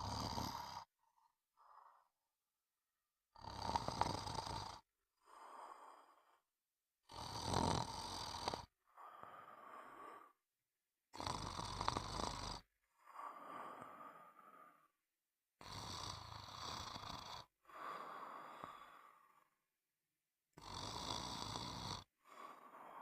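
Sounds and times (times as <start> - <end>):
loud snoring: 0.0 - 0.9, 3.4 - 6.2, 7.0 - 10.4, 11.1 - 14.8, 15.6 - 19.5, 20.6 - 23.0.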